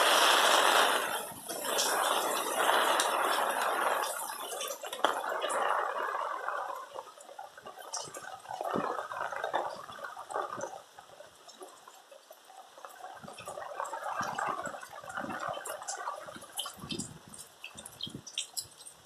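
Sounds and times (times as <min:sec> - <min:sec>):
heavy rain pouring: 0:00.0 - 0:19.0
water drip clicks: 0:11.4 - 0:19.0.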